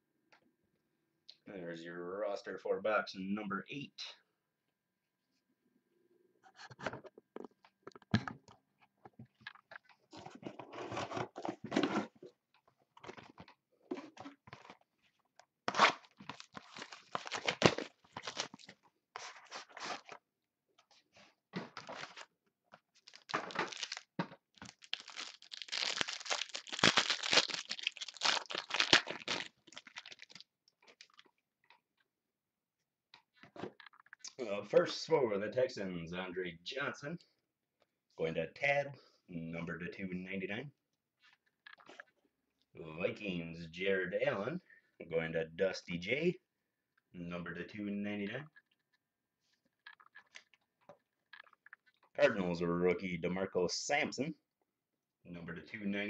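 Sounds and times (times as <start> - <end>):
plastic wrapping tearing and crinkling: 15.7 - 18.8, 22.9 - 31.2.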